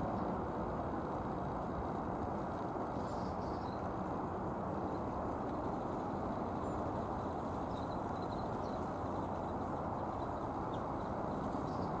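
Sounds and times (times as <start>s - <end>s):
distant city traffic rumble: 0.0s - 12.0s
faint bird chirps: 7.6s - 12.0s.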